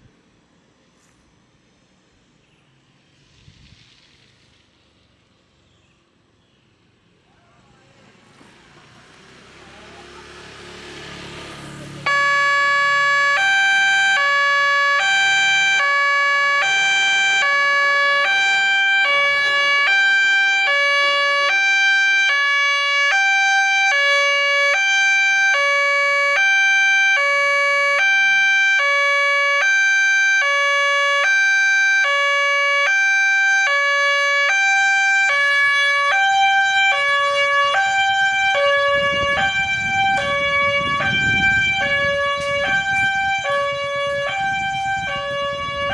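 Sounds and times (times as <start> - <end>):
level-crossing two-tone alarm: 12.0 - 45.9
low rumble: 37.9 - 45.9.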